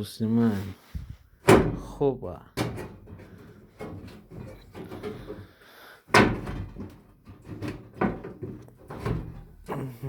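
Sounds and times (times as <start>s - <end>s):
panel knocks and rattles: 1.4s - 2.0s, 2.6s - 5.5s, 6.1s - 9.6s.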